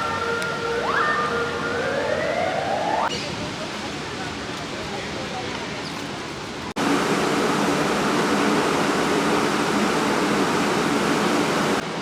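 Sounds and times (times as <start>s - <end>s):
steady rushing noise: 6.8s - 12.0s.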